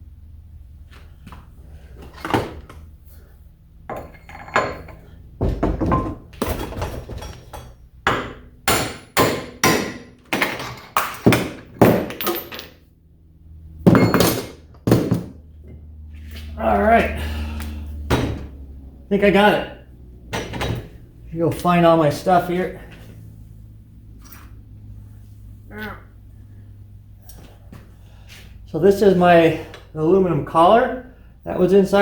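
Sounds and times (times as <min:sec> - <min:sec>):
hammer striking metal punch: 0:08.0 - 0:12.6, 0:13.8 - 0:15.3.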